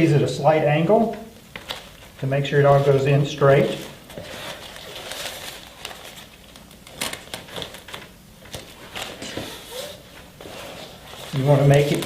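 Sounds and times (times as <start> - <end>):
velcro clicks and crackles: 4.4 - 9.2.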